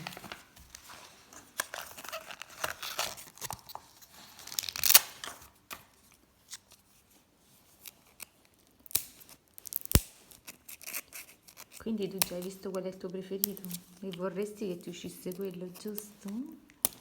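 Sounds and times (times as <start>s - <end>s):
packaging being torn open: 1.5s - 5.3s, 7.8s - 12.6s.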